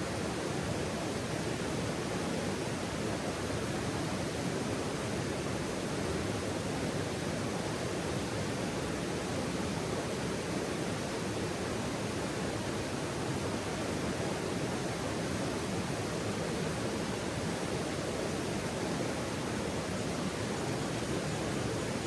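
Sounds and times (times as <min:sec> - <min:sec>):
stream water rushing: 0:13.4 - 0:22.0.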